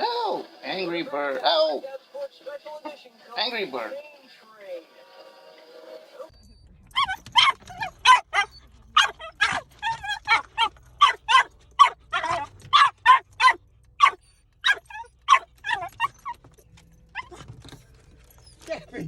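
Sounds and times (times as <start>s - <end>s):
animal yipping: 6.6s - 17.6s.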